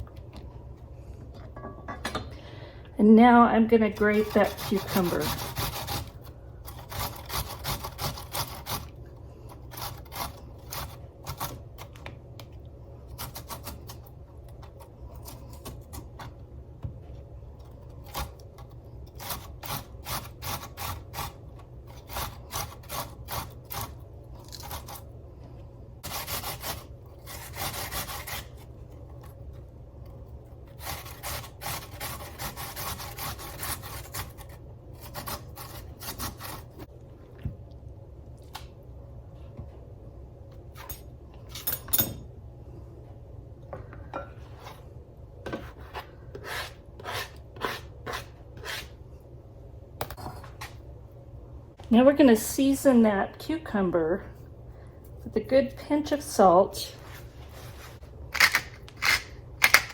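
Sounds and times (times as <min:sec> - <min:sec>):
cucumber grated on a grater: 0:04.0 - 0:08.9, 0:19.1 - 0:25.0, 0:26.0 - 0:28.7, 0:30.7 - 0:36.7.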